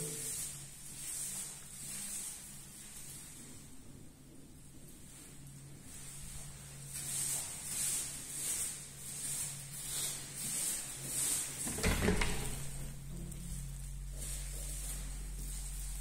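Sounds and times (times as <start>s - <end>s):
low steady hum: 0.0s - 16.0s
footsteps scuffing: 5.9s - 16.0s.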